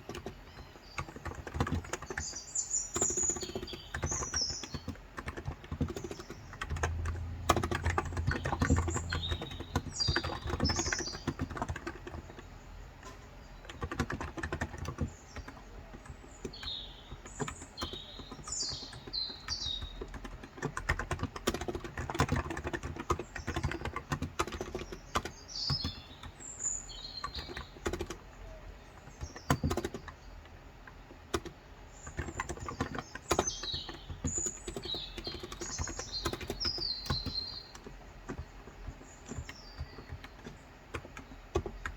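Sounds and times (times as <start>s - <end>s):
small birds chirping: 0.0s - 41.9s
keyboard keystroke clicks: 3.0s - 26.4s, 27.2s - 41.9s.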